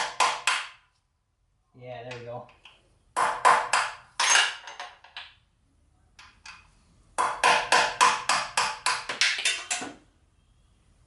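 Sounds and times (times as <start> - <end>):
hammer striking: 3.2 - 4.9, 7.2 - 10.0.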